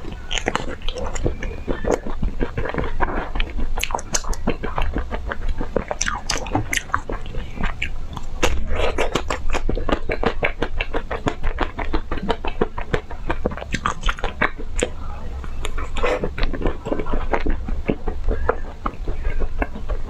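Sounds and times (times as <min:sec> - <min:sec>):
chewing crunchy ice cream: 0:00.0 - 0:20.0.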